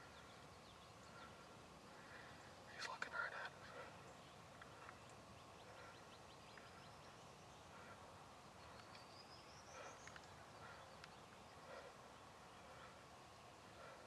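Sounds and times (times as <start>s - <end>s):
songbird chirps: 0.0s - 14.0s.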